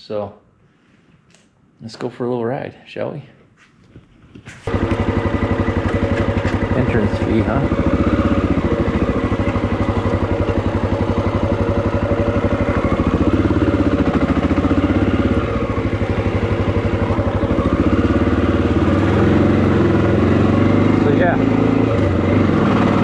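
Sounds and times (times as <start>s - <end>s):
motorcycle engine running: 4.7s - 23.0s.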